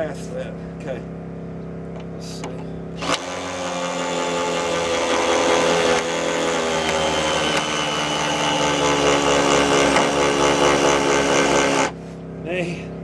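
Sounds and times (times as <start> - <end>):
electric power tool motor: 3.0 - 12.0.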